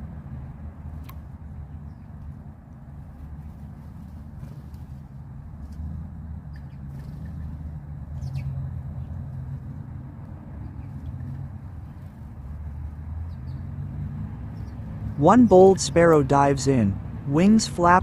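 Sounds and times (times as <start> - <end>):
low mechanical rumble: 0.0 - 18.0
faint bird chirps: 6.5 - 9.1.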